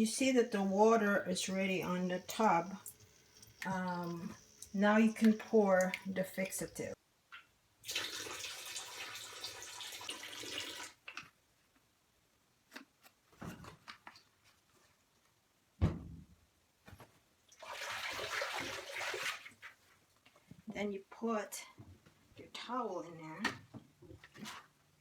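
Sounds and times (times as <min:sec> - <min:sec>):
water pouring into washing machine: 0:00.2 - 0:07.0, 0:07.8 - 0:11.0, 0:17.5 - 0:19.7.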